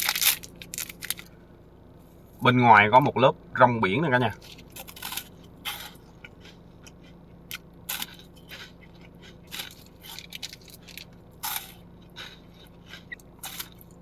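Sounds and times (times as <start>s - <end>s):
crispy food crunching: 0.0s - 1.4s, 4.3s - 14.0s.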